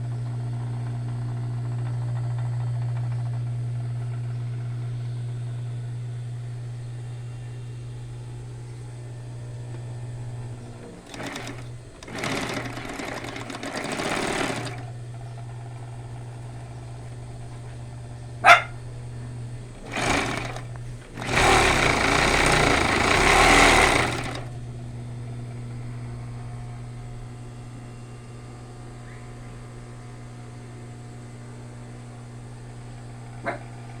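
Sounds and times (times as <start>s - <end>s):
sewing machine running: 10.2s - 15.2s, 19.6s - 24.6s.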